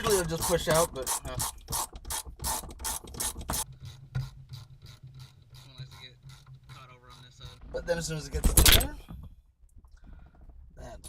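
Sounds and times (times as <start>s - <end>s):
ratchet wrench clicking: 0.0s - 3.9s
metal scraping: 0.0s - 9.1s.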